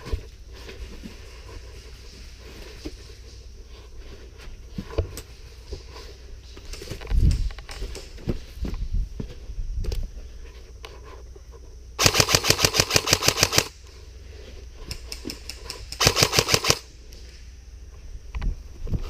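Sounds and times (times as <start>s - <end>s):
airsoft gun full-auto bursts: 12.0s - 13.8s, 16.0s - 16.9s.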